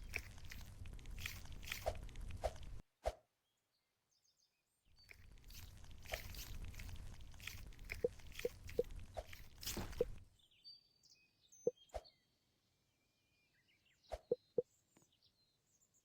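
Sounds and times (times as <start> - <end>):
foam toy rustling: 0.0 - 2.8, 5.1 - 10.2.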